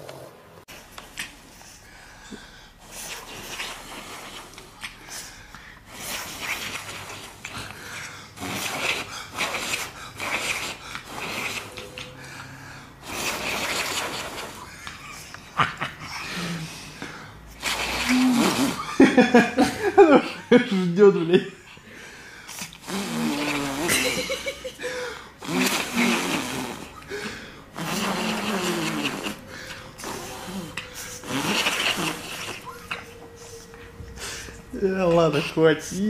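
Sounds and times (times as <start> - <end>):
dog breathing through nose: 1.5 - 15.2, 25.0 - 32.9.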